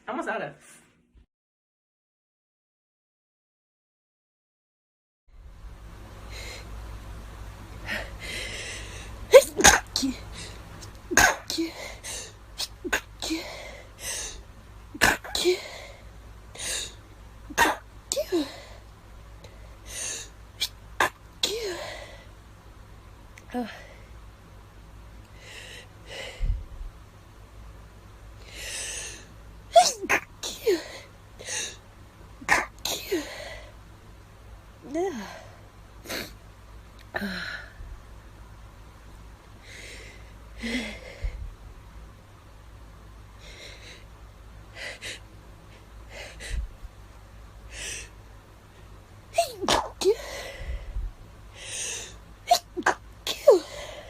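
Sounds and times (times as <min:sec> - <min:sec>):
person sneezing: 0:09.4 - 0:10.2, 0:11.1 - 0:11.9, 0:15.0 - 0:15.8, 0:17.5 - 0:18.6, 0:29.8 - 0:31.0, 0:32.4 - 0:33.4, 0:49.4 - 0:50.3, 0:52.5 - 0:54.0.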